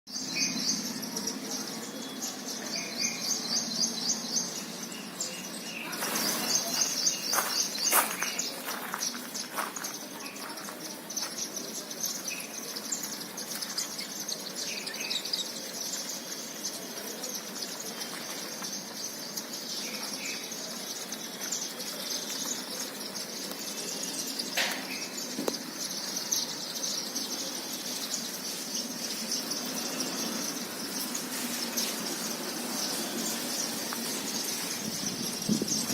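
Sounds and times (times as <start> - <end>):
flock of birds twittering: 0.1 - 35.9
wingbeats: 0.8 - 35.9.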